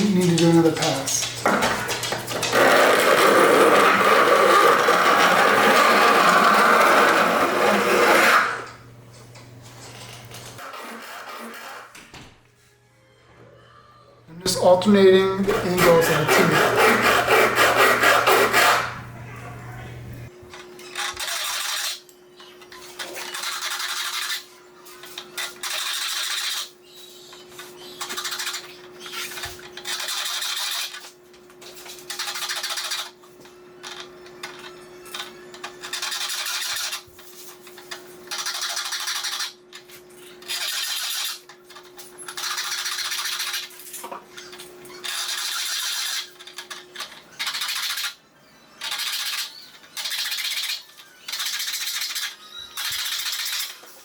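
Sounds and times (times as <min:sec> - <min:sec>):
metal file rasping on saw teeth: 0:15.5 - 0:19.0.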